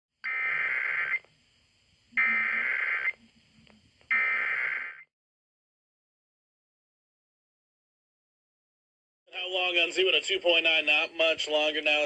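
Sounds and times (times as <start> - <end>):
buzzy digital data tones: 0.3 - 1.3, 2.0 - 5.1.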